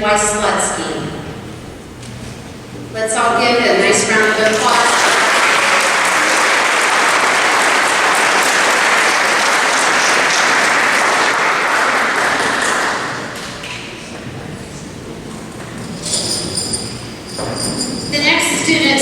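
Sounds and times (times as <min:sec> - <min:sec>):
audience applauding: 0:04.1 - 0:14.0.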